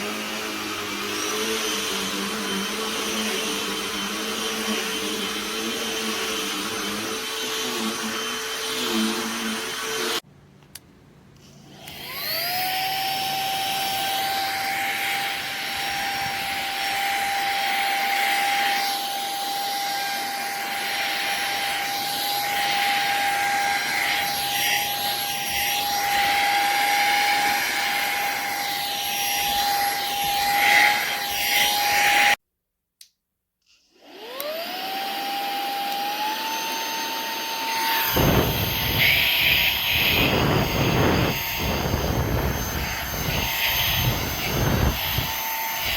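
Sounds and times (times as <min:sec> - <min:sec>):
vacuum motor whine: 0:00.0 - 0:10.2, 0:11.7 - 0:32.4, 0:34.0 - 0:45.9
rushing air: 0:38.0 - 0:45.9.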